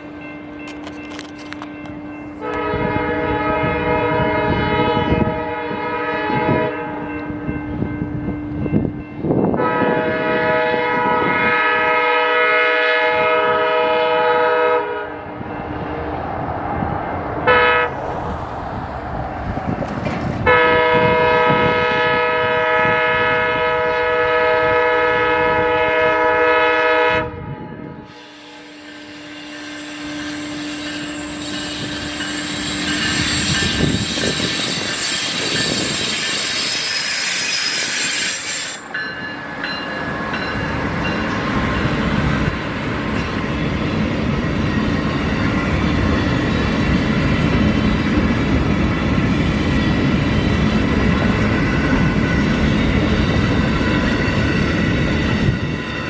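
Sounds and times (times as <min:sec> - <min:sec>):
train rumble: 0:00.0 - 0:56.0
locomotive air horn blasts: 0:02.4 - 0:07.0, 0:09.6 - 0:15.3, 0:17.4 - 0:18.0, 0:20.4 - 0:38.8.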